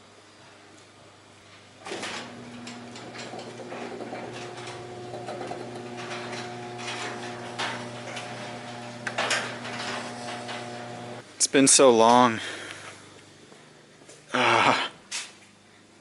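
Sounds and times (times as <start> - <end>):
garage door motor humming: 1.8 - 11.2
door rattling along tracks: 1.9 - 11.2.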